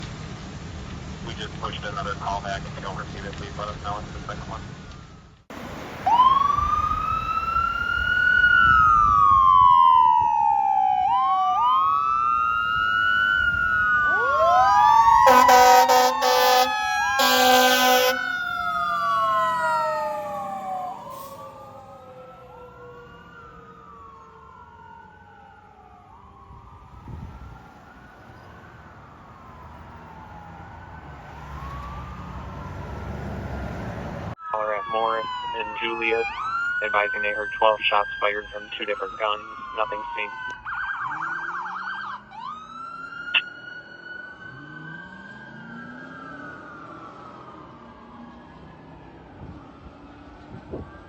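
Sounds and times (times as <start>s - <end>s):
fire truck sirens wailing: 0.1s - 51.0s
air horn blasts: 15.2s - 18.4s.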